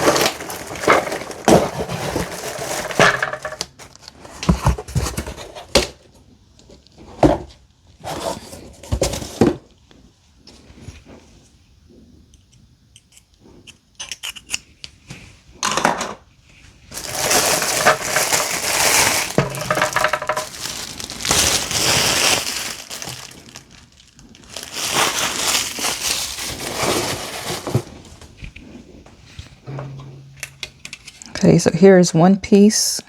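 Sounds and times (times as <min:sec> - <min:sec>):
packaging crinkling and rustling: 0:00.0 - 0:06.0, 0:16.9 - 0:29.6.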